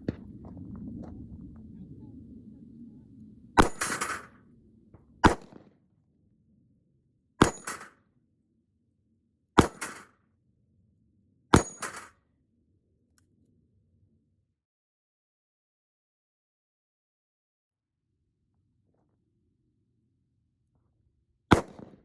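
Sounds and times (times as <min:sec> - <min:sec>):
revolver gunshots with echo: 0:03.6 - 0:04.3, 0:05.2 - 0:05.6, 0:07.4 - 0:08.0, 0:09.6 - 0:10.1, 0:11.6 - 0:12.1, 0:21.5 - 0:22.0.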